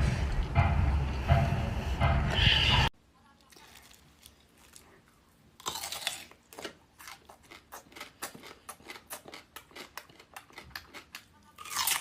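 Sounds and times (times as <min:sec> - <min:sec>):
crunchy food chewing: 0:03.4 - 0:12.0.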